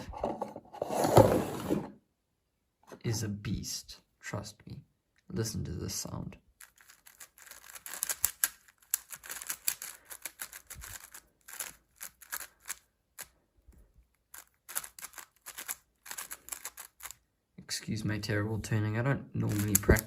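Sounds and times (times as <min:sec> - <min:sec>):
puzzle cube plastic clicking: 0:06.6 - 0:17.2, 0:19.5 - 0:20.0.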